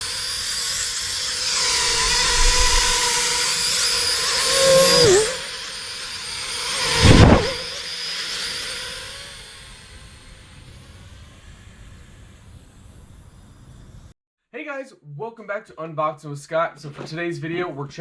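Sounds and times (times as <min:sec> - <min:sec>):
quadcopter propellers whining: 0:00.0 - 0:14.1
short loud rush of noise: 0:06.8 - 0:07.8.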